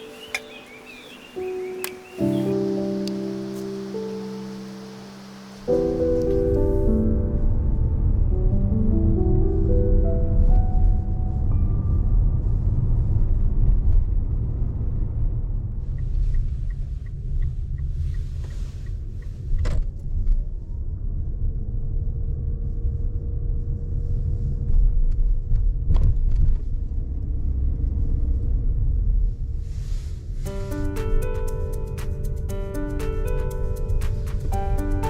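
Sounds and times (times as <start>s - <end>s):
car engine rumbling: 0.0s - 30.4s
light even ticks: 15.8s - 19.7s.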